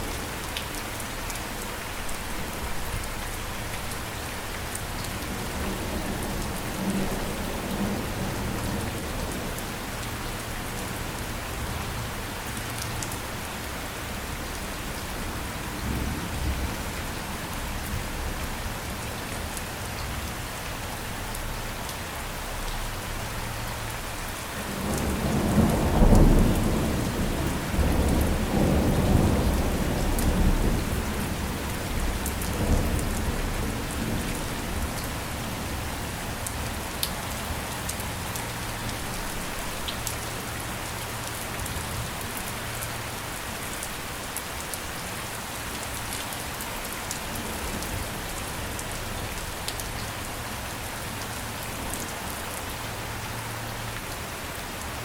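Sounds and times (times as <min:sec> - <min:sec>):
steady rain: 0:00.0 - 0:55.0
thunder rumbling: 0:24.7 - 0:35.8.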